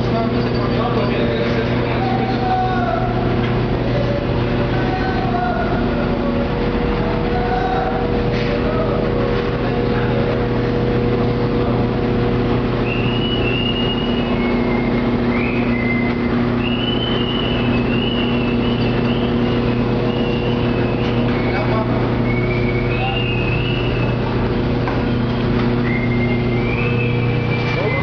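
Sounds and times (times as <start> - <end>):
washing machine motor hum: 0.0 - 28.0
high wavering squeals: 12.6 - 28.0.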